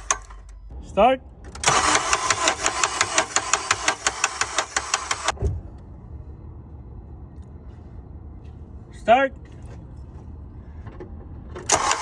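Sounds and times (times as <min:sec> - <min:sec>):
engine cranking with clatter: 0:00.0 - 0:00.7, 0:01.4 - 0:05.4, 0:10.8 - 0:12.0
low hum: 0:05.2 - 0:11.7
thump: 0:05.4 - 0:05.7.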